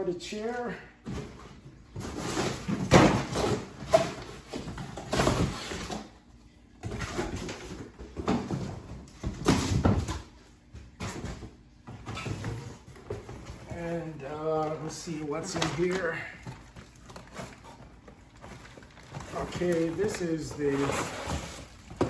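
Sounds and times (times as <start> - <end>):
cardboard rustling: 10.9 - 22.0
plastic crinkling: 14.1 - 22.0.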